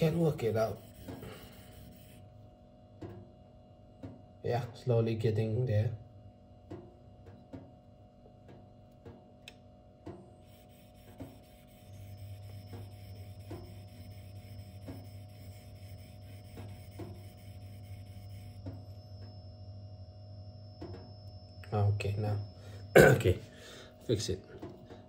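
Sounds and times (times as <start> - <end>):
knife rasping on whetstone: 0.0 - 2.2, 10.4 - 18.9
steady low hum: 0.0 - 25.0.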